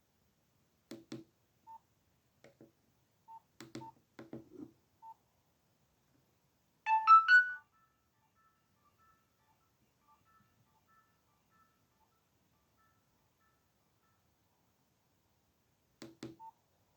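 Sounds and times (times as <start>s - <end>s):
keypad clicks: 3.6s - 4.4s, 16.0s - 16.5s
rising three-note alert tone: 6.9s - 7.6s
short key beeps: 6.9s - 7.6s
faint electronic notes: 6.9s - 14.2s.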